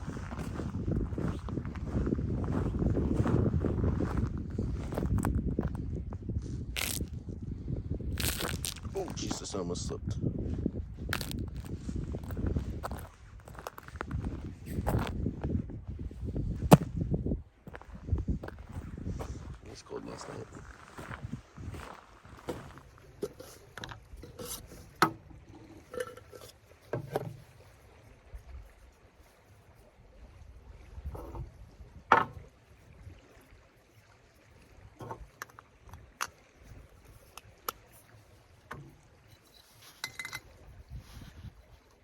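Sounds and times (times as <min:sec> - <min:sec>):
objects knocking and rubbing: 0:22.4 - 0:27.5, 0:35.0 - 0:35.6, 0:38.7 - 0:40.5.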